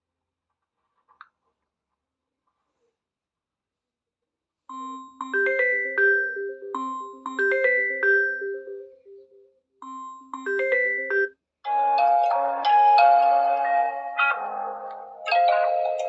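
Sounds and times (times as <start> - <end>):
music: 4.7 - 11.1, 11.7 - 16.0
bright mallet ringtone: 4.7 - 16.0.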